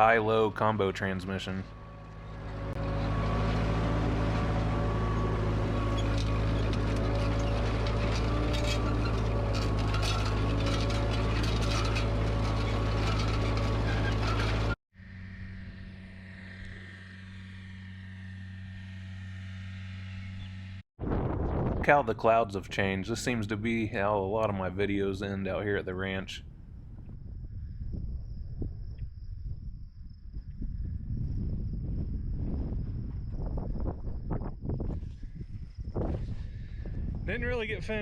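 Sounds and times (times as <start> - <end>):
quiet steady engine drone: 0.0 - 20.8
tractor engine running: 0.0 - 20.8
clanks and rattles: 1.6 - 14.8.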